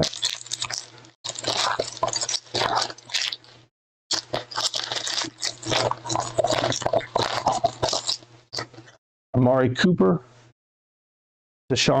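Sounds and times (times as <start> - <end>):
plastic wrapper crinkling and tearing: 0.0 - 9.0.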